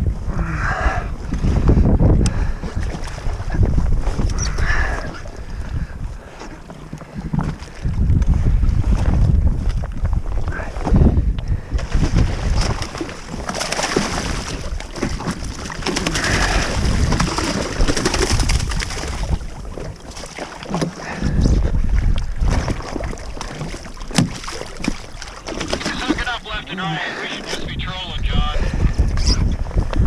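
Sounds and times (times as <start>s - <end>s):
wind buffeting microphone: 0.0s - 20.2s, 20.8s - 26.6s, 27.6s - 30.0s
water sloshing: 11.9s - 27.7s.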